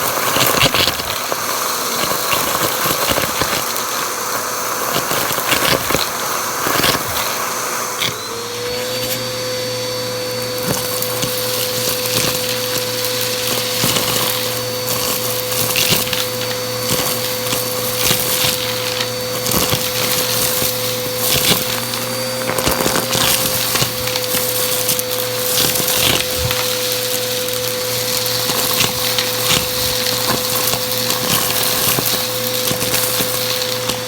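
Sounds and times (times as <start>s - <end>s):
debris crackling in vacuum: 0.0s - 34.0s
vacuum cleaner running: 0.0s - 34.0s.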